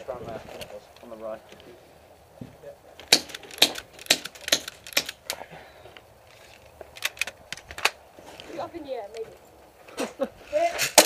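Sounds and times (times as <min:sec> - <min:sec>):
airsoft gun shots: 0:03.1 - 0:05.2.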